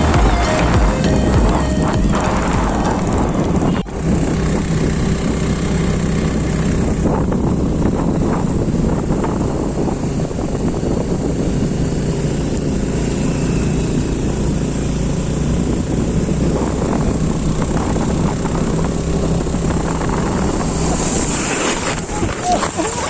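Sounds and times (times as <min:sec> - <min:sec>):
vehicle engine rumbling: 0:00.0 - 0:23.0.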